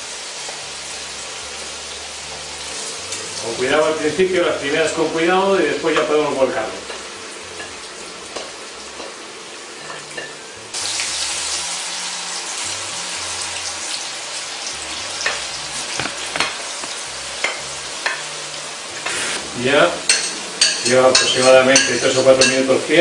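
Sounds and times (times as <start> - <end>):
potatoes sizzling in oil: 0.0 - 23.0.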